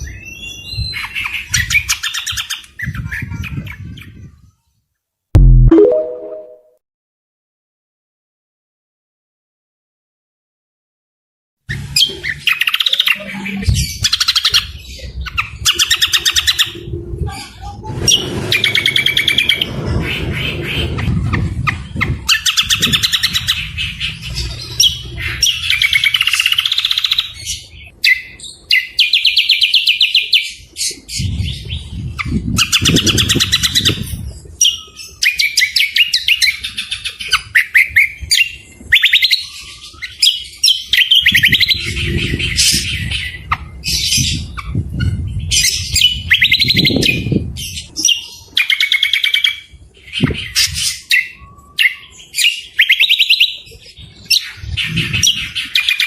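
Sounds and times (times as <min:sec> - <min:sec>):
harsh bird calls: 0:00.0 - 0:04.3, 0:11.7 - 0:56.0
songbirds chirping trills: 0:11.7 - 0:56.0.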